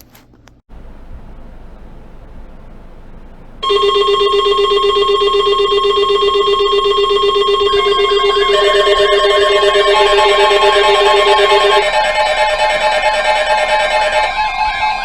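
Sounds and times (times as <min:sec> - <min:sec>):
loud steady electronic tone: 0:02.9 - 0:15.0
shifting electronic melody: 0:03.6 - 0:15.0.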